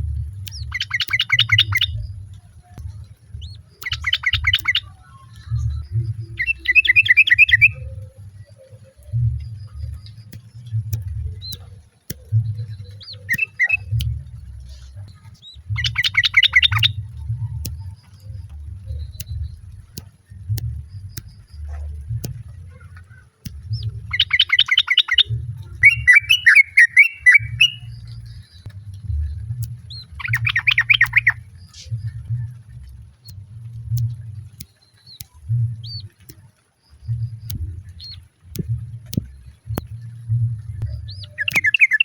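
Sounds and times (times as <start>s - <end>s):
low rumble: 0.0s - 24.6s, 25.2s - 26.4s, 27.2s - 41.7s
bird chattering rattles: 0.5s - 1.9s, 3.4s - 7.8s, 11.4s - 18.3s, 21.0s - 28.6s, 29.9s - 32.2s, 41.0s - 42.0s
bird warbled phrase: 25.8s - 27.9s.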